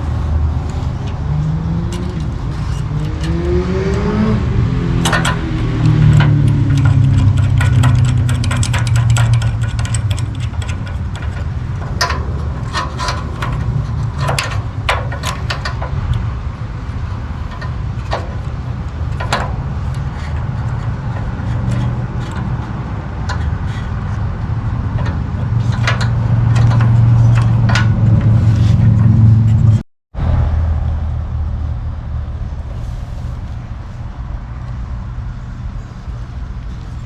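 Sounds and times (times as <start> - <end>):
low mechanical hum: 0.0 - 37.0
sharp clicks and knocks: 0.6 - 29.8.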